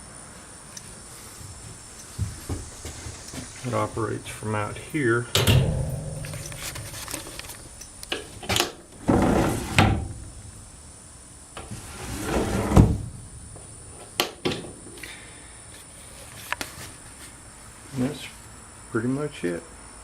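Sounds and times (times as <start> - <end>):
heavy door thud: 5.4 - 7.8, 9.0 - 10.8, 12.2 - 13.7
coop door sliding and scraping: 5.4 - 10.7, 11.6 - 13.7.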